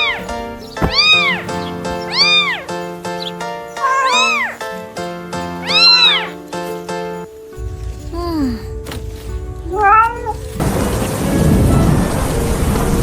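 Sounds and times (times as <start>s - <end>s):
background music: 0.0s - 13.0s
animal cry like a meow: 0.8s - 1.4s, 3.8s - 4.6s, 5.6s - 6.4s, 9.7s - 10.4s.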